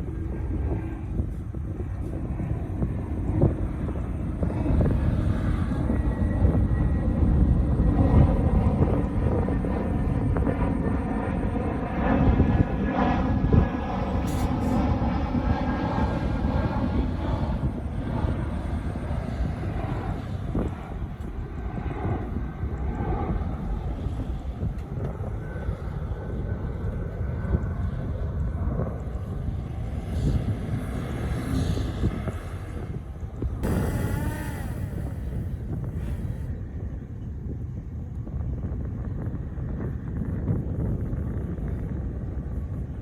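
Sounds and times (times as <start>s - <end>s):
heavy diesel machinery running: 33.6s - 36.5s
high-pitched whine: 33.6s - 36.6s.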